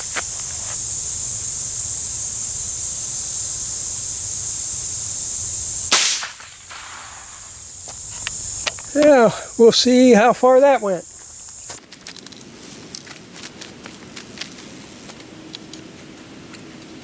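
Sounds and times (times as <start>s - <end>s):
insects chirring: 0.0s - 17.0s
revolver gunshot: 5.9s - 7.4s.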